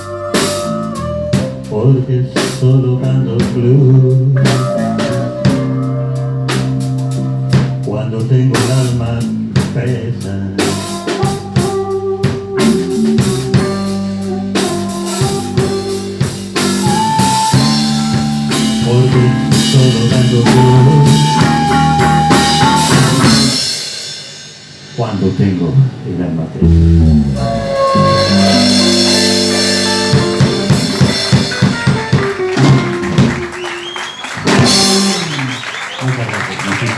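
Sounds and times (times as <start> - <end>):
electric guitar: 0.0 - 7.9, 10.6 - 23.7, 26.6 - 35.6
bass guitar: 0.0 - 23.8, 25.0 - 36.9
drum kit: 0.0 - 25.9, 26.5 - 36.9
electric guitar chord ringing: 26.8 - 33.3.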